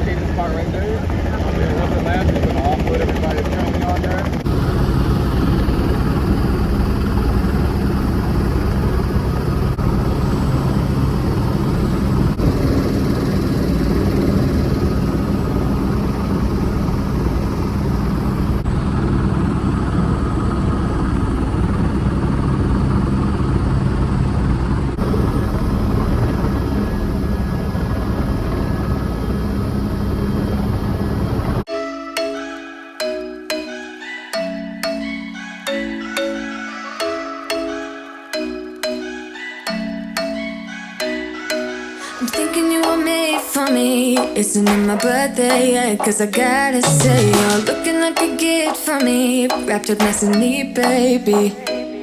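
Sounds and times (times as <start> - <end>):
helicopter rotor and engine: 0.0 - 31.7.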